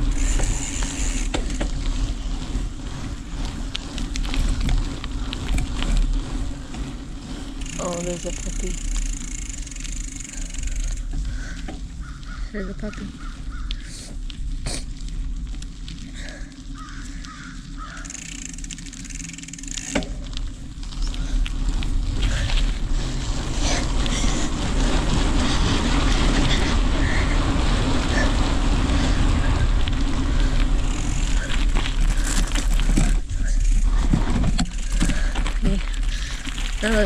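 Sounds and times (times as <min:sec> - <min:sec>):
bicycle tyres rolling on gravel: 0:00.0 - 0:37.0
crow cawing: 0:10.6 - 0:14.1, 0:16.7 - 0:18.6
wind buffeting microphone: 0:20.6 - 0:37.0.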